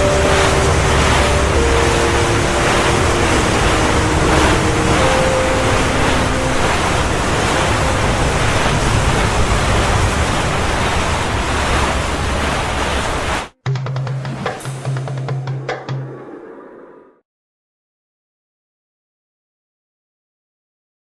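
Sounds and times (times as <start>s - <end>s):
wind buffeting microphone: 0.0s - 13.5s
rushing water: 0.0s - 16.1s.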